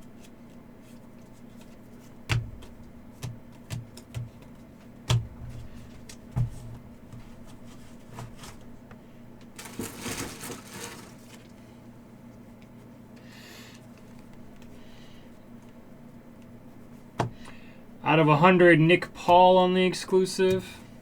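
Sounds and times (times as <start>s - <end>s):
faint steady hum: 0.0s - 21.0s
cards tapping and clicking: 1.4s - 7.3s, 20.5s - 20.8s
card packs rustling: 9.4s - 11.7s.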